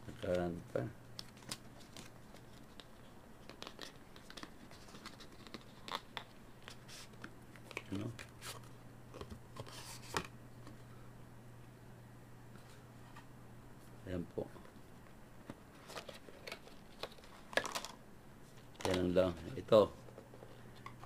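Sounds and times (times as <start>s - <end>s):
low steady hum: 0.0s - 21.0s
packaging crinkling and tearing: 15.8s - 18.0s.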